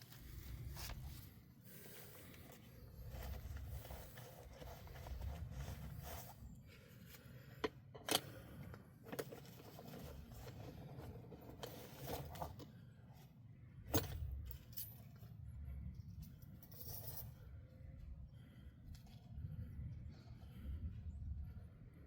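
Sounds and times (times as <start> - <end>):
faint low rumble: 0.0 - 7.6, 12.2 - 22.0.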